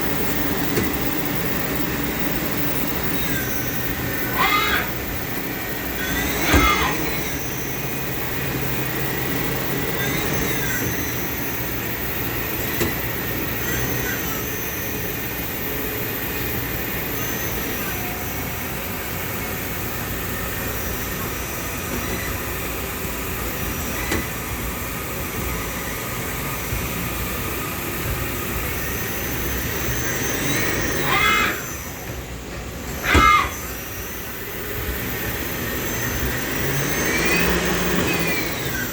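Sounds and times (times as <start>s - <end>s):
industrial machinery drone: 0.0s - 38.9s
brief machinery squeal: 2.1s - 5.4s, 6.0s - 11.7s, 13.5s - 15.1s, 17.0s - 19.5s, 21.0s - 22.5s, 28.8s - 32.0s, 33.0s - 38.9s.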